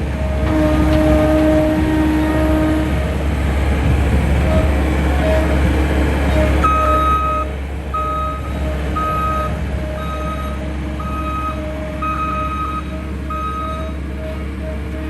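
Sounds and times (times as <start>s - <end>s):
engine low hum: 0.0s - 15.0s
backup alarm beeping: 6.4s - 14.0s.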